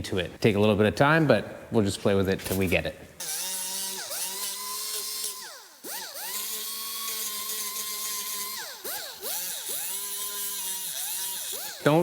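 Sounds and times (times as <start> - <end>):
power grinder whining: 3.2 - 12.0.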